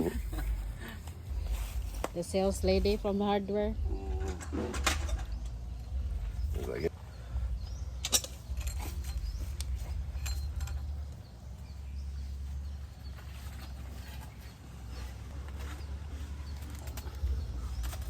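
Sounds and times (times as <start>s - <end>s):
low rumble: 0.1s - 12.9s.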